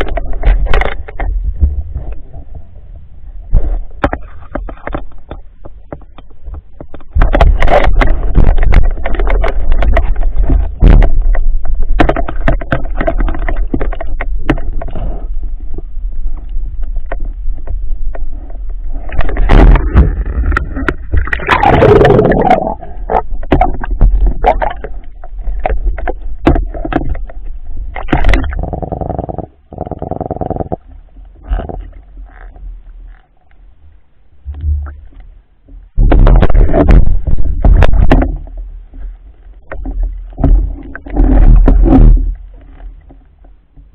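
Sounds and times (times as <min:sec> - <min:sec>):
knocks and scrapes: 0:00.0 - 0:02.7, 0:03.5 - 0:33.7, 0:34.4 - 0:43.9
underwater rushing water: 0:18.3 - 0:32.6, 0:34.5 - 0:43.2.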